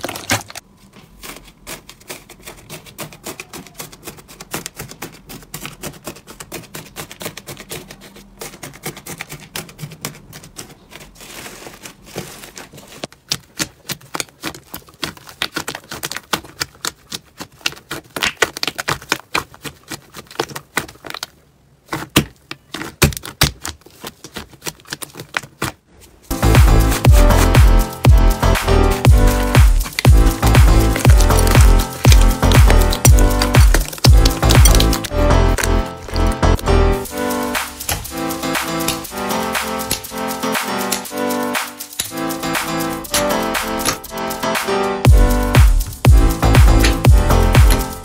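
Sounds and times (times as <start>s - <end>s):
crunchy slime crackling: 0.0s - 38.2s.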